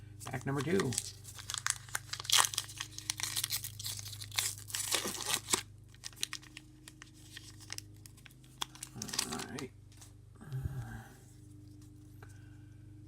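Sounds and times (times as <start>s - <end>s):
card wrapper crackling: 0.2s - 9.7s.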